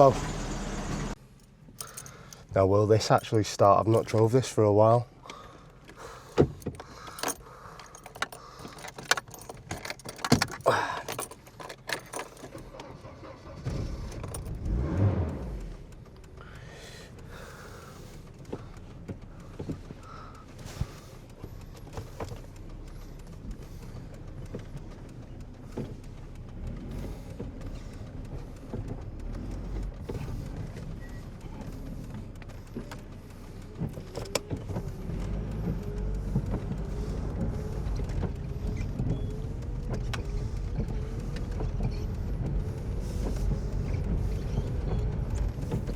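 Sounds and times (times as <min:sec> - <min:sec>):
car engine starting and idling: 0:00.0 - 0:45.9
keys jangling: 0:01.3 - 0:02.5, 0:06.5 - 0:13.1, 0:14.0 - 0:14.7.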